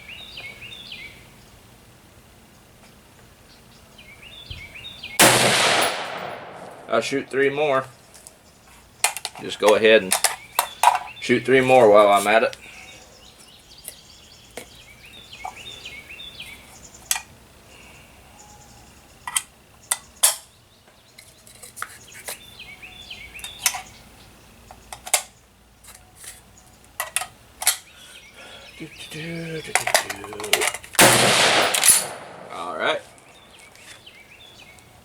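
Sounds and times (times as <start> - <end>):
birds chirping faintly: 0.0 - 35.0
metallic clicks of rifle handling: 27.0 - 27.9.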